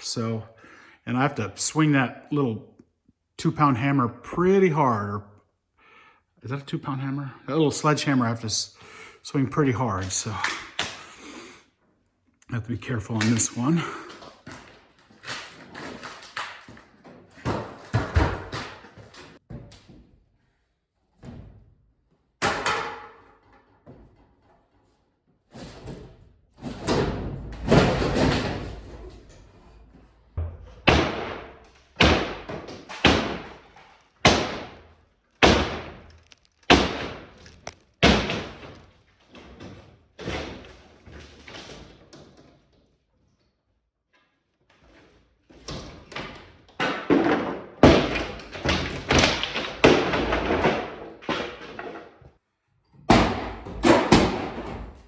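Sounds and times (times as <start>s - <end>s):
wall crashing: 26.6s - 40.9s, 46.8s - 51.9s, 53.1s - 55.0s
sledgehammer blows on wall: 30.4s - 38.8s.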